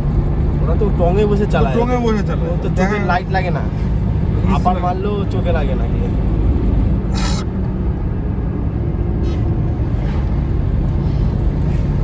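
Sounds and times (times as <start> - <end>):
car engine and road rumble: 0.0 - 12.0.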